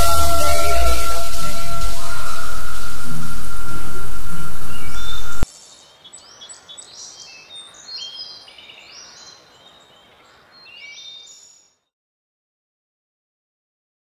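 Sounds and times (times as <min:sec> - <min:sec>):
loud music: 0:00.0 - 0:05.4
birds chirping: 0:04.2 - 0:11.6.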